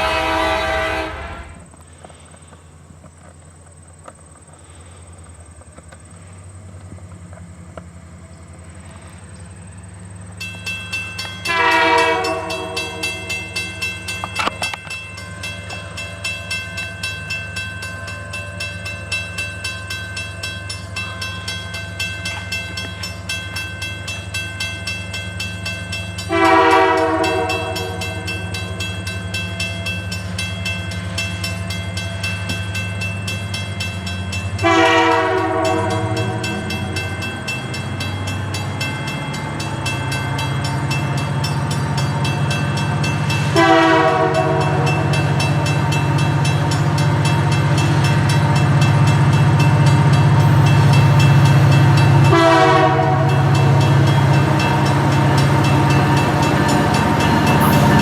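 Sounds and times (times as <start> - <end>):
train horn blasts: 0.0 - 1.7, 11.4 - 13.7, 26.2 - 28.8, 34.6 - 37.0, 43.4 - 45.7, 50.3 - 58.0
locomotive engine running: 0.0 - 58.0.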